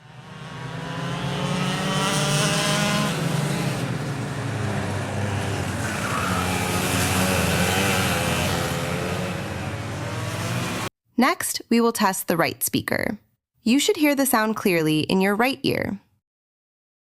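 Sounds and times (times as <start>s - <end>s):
racing engine running: 0.0s - 10.9s.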